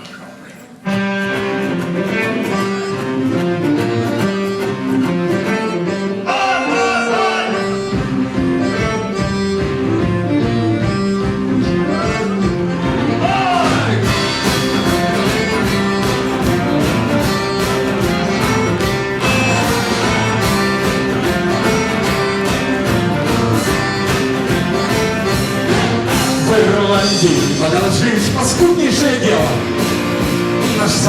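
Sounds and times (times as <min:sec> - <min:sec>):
drums: 0:00.0 - 0:06.2, 0:07.0 - 0:31.0
guitar: 0:00.0 - 0:31.0
bass: 0:00.9 - 0:31.0
sliding melodic lead: 0:00.9 - 0:31.0.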